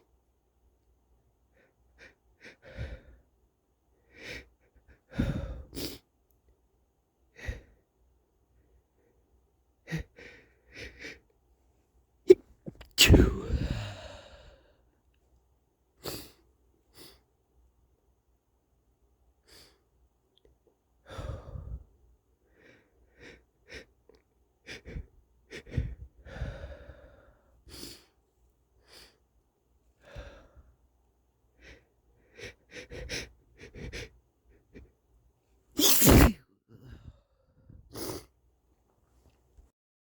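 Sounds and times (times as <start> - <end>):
man sneezing: 12.3 - 14.0, 35.8 - 36.4
short breaths: 12.8 - 14.8.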